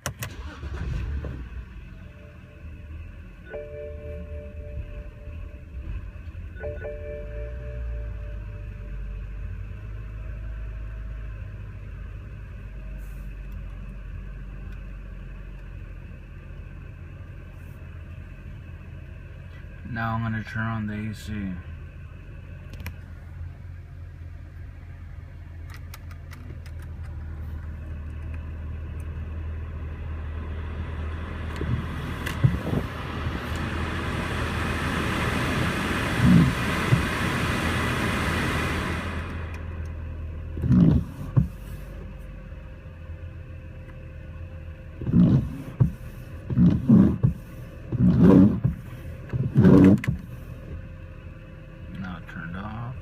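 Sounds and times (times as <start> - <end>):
air conditioning blower rushing: 31.3 - 39.6.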